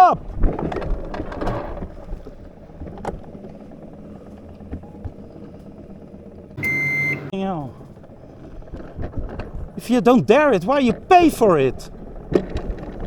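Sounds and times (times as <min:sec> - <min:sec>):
sled rumbling on metal track: 0:00.0 - 0:13.0
loud high beep: 0:06.6 - 0:07.3.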